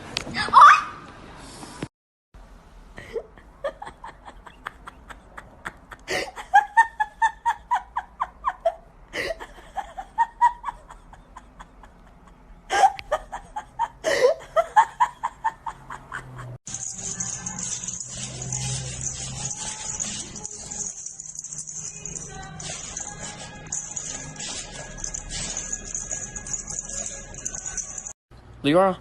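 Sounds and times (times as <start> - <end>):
person laughing: 3.0 - 16.6.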